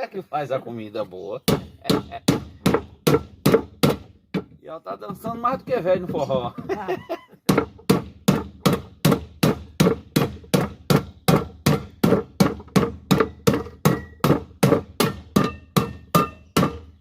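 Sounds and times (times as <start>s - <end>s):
hammer striking metal pot: 7.5s - 17.0s.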